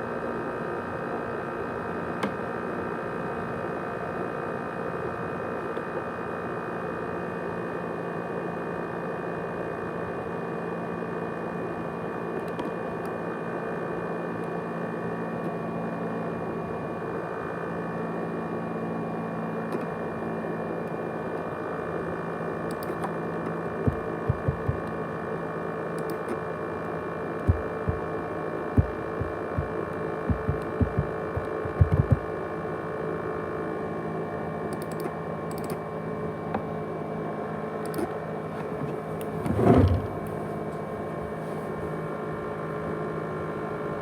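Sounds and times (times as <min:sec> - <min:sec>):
laptop fan whirring hum: 0:00.0 - 0:44.0
dull low thumps: 0:23.9 - 0:24.9, 0:27.5 - 0:28.1, 0:28.8 - 0:32.2.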